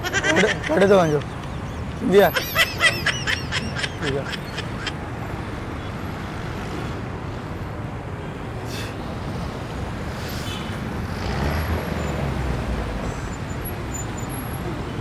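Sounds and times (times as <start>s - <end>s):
road traffic rumble: 0.0s - 15.0s
vehicle passing close by: 8.9s - 15.0s.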